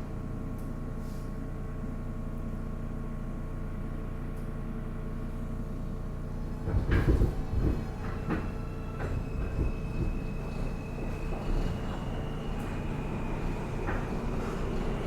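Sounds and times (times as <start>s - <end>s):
heavy clunks and knocks: 6.6s - 10.2s.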